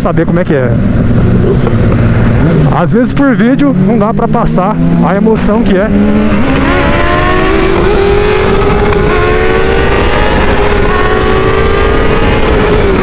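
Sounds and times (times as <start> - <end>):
motorcycle engine accelerating: 0.0 - 13.0
wind rush: 0.7 - 13.0.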